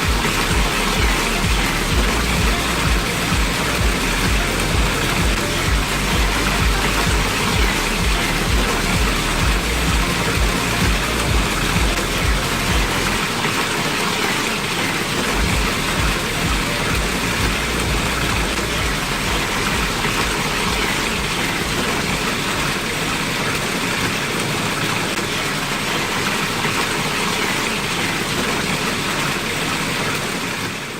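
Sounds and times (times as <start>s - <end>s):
low rumble: 0.0s - 13.3s, 15.3s - 23.4s
waterfall splashing: 0.0s - 30.9s.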